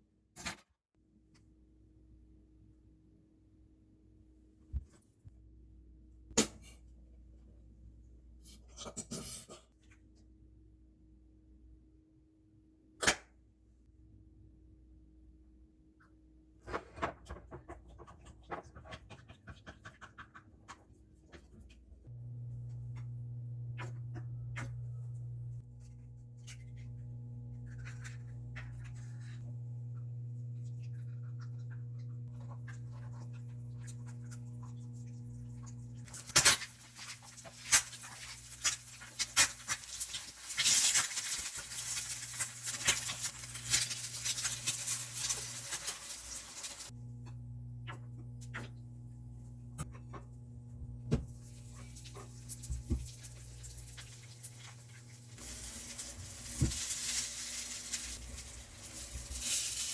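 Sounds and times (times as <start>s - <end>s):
steady low hum: 22.1s - 36.2s, 46.8s - 59.9s.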